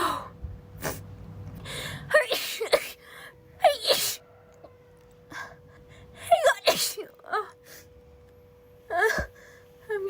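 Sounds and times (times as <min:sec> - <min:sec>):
woman sneezing: 0:06.4 - 0:07.1.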